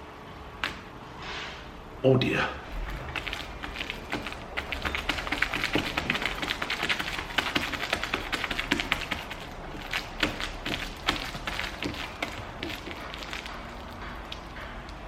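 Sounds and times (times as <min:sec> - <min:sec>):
slime squeezed by hand: 0:02.7 - 0:14.6.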